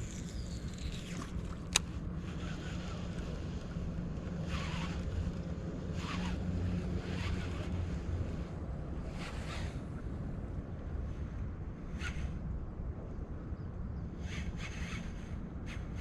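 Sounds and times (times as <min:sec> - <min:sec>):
wind rumbling on microphone: 0:00.0 - 0:16.0.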